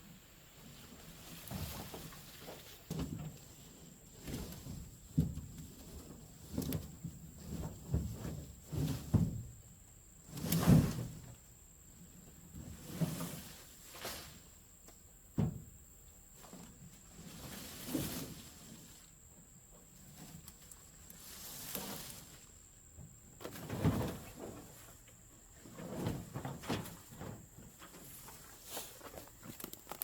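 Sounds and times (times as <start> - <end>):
rustling: 12.1 - 14.8, 16.3 - 30.0.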